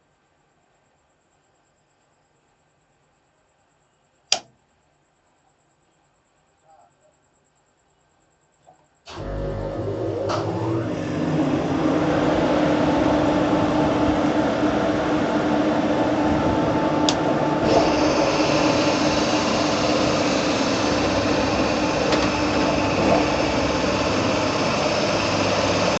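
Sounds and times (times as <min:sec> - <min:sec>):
sharp click: 0:04.3 - 0:04.6
locomotive machinery humming: 0:09.1 - 0:26.0
high whirring hiss: 0:10.6 - 0:26.0.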